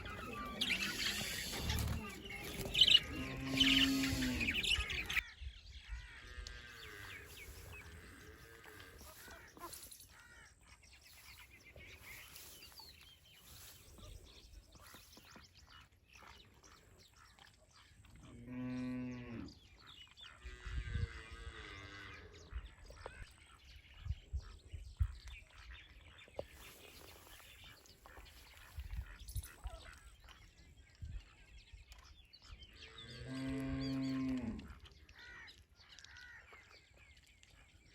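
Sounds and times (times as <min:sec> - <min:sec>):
cattle mooing: 0:00.0 - 0:05.1.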